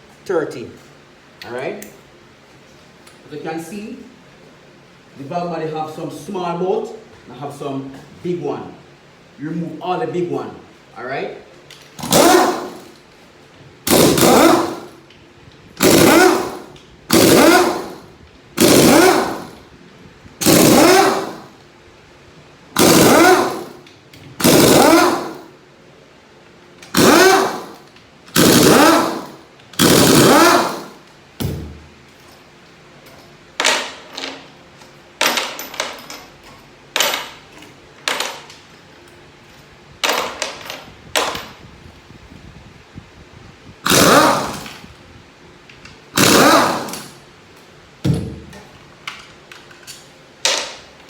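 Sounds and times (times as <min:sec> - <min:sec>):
power tool bursts: 0:12.0 - 0:13.0, 0:13.8 - 0:15.0, 0:15.8 - 0:19.7, 0:20.4 - 0:21.6, 0:22.8 - 0:23.8, 0:24.4 - 0:25.5, 0:26.9 - 0:31.6, 0:43.8 - 0:44.8, 0:46.2 - 0:47.2.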